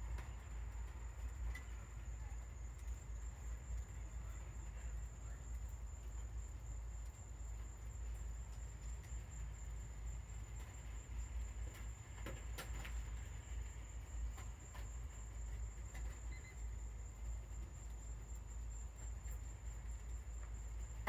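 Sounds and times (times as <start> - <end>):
low outdoor rumble: 0.0 - 21.0
faint electronic beep: 16.3 - 16.7.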